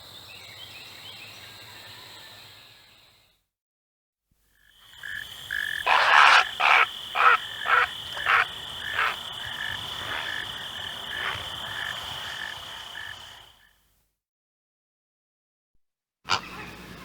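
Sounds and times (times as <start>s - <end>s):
heron croaking: 5.0s - 13.5s, 16.3s - 16.8s.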